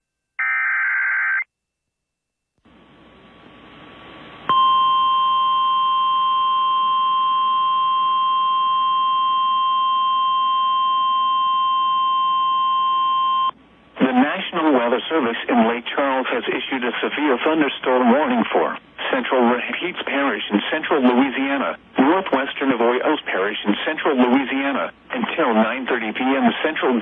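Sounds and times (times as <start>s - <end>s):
radio hiss: 14.0s - 27.0s.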